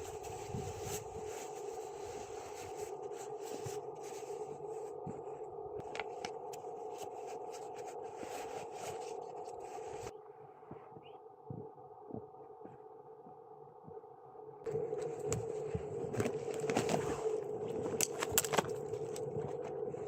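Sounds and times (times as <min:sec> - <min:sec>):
scraping and scratching: 0:00.0 - 0:10.1, 0:14.7 - 0:20.0
steady hum: 0:00.0 - 0:20.0.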